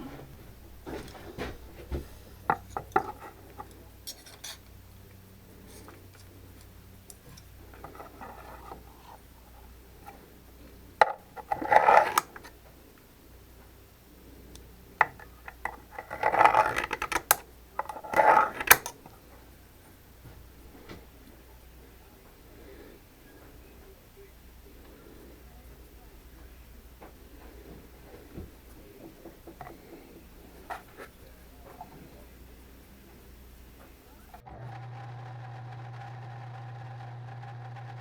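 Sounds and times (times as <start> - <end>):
objects clattering and rattling: 0.0 - 4.7, 5.6 - 9.2, 11.0 - 12.7, 15.0 - 19.4
hard objects clicking: 11.0 - 12.6, 14.5 - 19.1.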